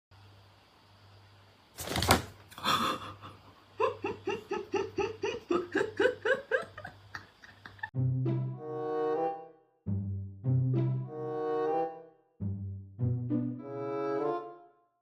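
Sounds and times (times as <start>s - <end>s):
person laughing: 2.6s - 7.9s.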